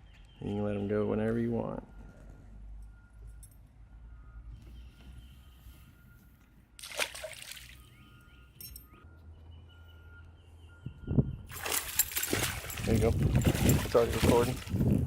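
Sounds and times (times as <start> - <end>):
water splash: 6.8 - 7.8, 11.5 - 14.8
water sloshing and trickling: 6.8 - 8.2, 11.4 - 15.0.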